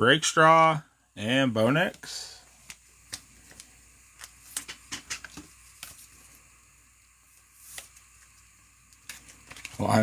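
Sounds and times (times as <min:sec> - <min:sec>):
card sliding on plastic: 0:07.4 - 0:08.1.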